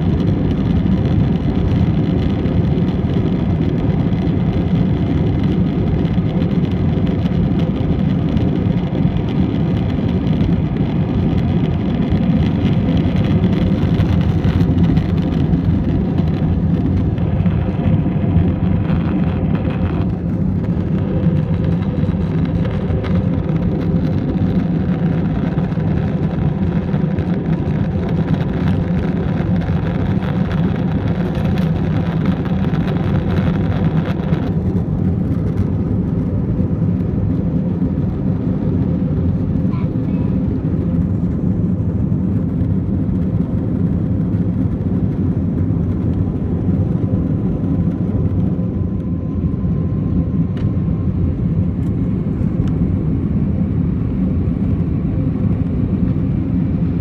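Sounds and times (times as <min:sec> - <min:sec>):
jet engines droning: 0:00.0 - 0:57.0.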